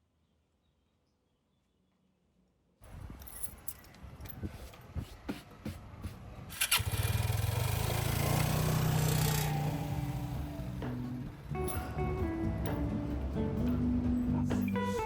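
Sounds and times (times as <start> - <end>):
engine starting and running: 6.5 - 14.6.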